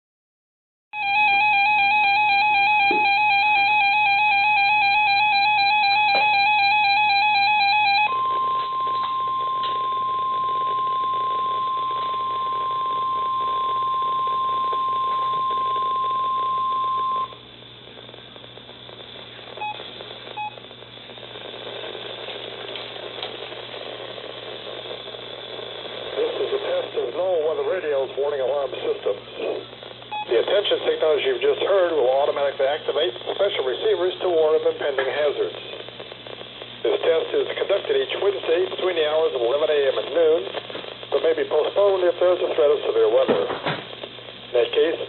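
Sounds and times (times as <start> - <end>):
steady alarm tone: 1.0 - 17.4
warbling buzzing tone: 1.0 - 26.1
radio hiss: 8.3 - 45.0.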